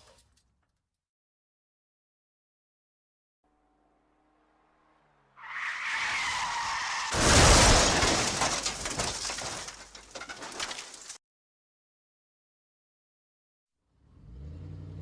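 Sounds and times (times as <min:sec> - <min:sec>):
car tyres screeching: 0:03.5 - 0:08.3
rattling crackling debris: 0:06.2 - 0:11.2
loud crash impact: 0:07.0 - 0:11.2.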